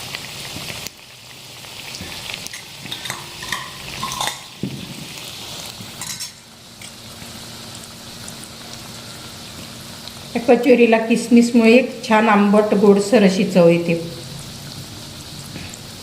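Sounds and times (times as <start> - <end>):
food deep-frying in oil: 0.0 - 16.0.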